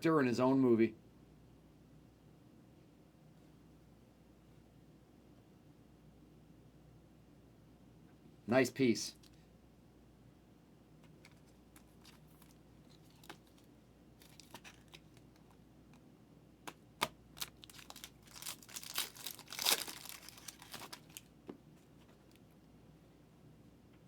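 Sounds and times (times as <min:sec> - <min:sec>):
foil wrapper tearing and crinkling: 0:11.3 - 0:15.6, 0:16.7 - 0:21.3.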